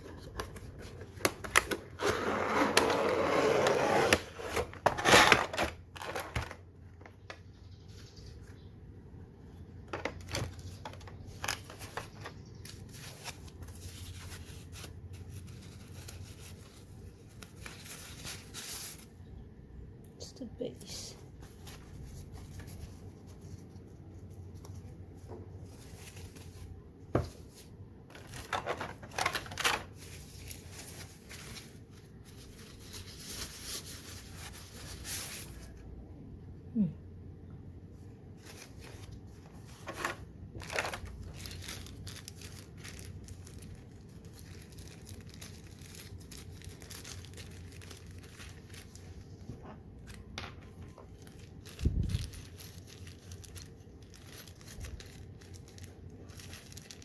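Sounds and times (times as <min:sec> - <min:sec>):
plastic and paper crinkling: 0:04.2 - 0:07.5, 0:09.8 - 0:19.2, 0:21.3 - 0:35.8, 0:38.3 - 0:57.0.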